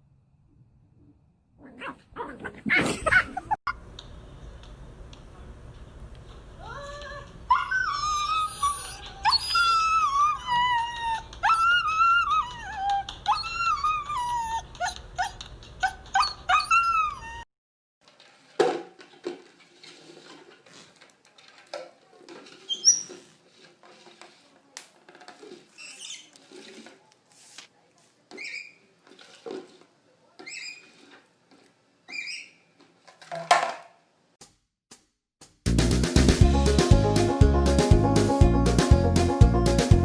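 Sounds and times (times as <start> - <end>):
dog whining and howling: 7.5 - 17.5.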